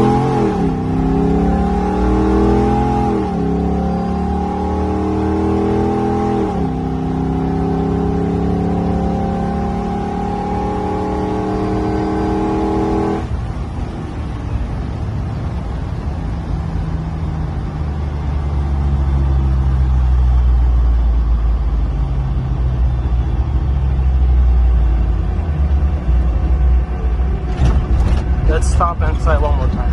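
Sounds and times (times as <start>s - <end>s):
engine accelerating: 0.0s - 29.9s
low rumble: 13.2s - 29.9s.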